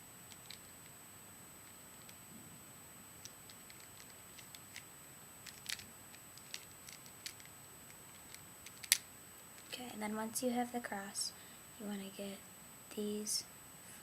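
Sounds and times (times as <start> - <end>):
steady hiss: 0.0 - 14.0
plastic puzzle cube clicks: 5.5 - 7.5, 8.2 - 9.0.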